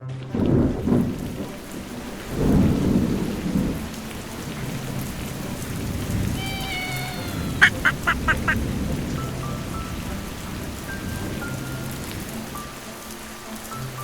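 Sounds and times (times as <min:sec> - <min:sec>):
heavy rain: 0:00.4 - 0:14.0
rolling thunder: 0:00.5 - 0:06.4.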